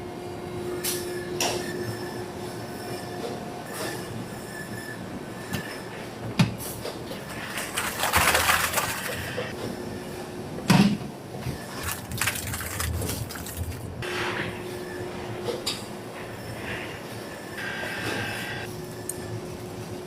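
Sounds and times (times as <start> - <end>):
machinery whine: 11.4 - 20.0.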